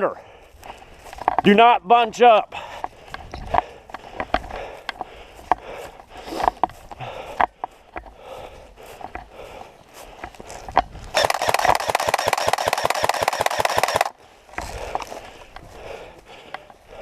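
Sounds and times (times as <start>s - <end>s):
footsteps: 0.0s - 1.6s, 2.4s - 17.0s
rustling and clicks of gear: 0.5s - 1.6s, 2.6s - 17.0s
airsoft gun firing full auto: 11.2s - 14.2s.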